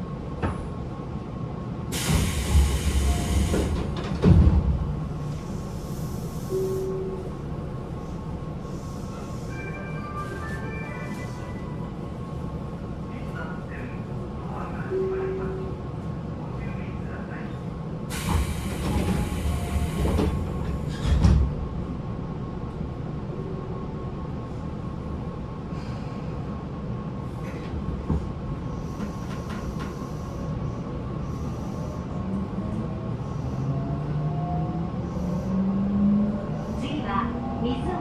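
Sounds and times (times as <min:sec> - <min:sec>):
train car hum: 0:00.0 - 0:38.0
air hiss: 0:01.9 - 0:03.9, 0:18.1 - 0:20.6.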